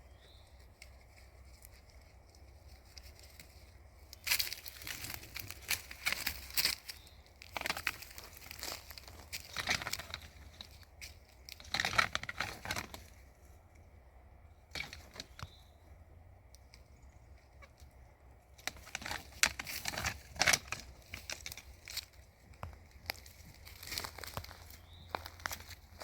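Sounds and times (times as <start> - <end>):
dry leaves rustling and crunching: 0.1 - 13.4, 18.6 - 26.0.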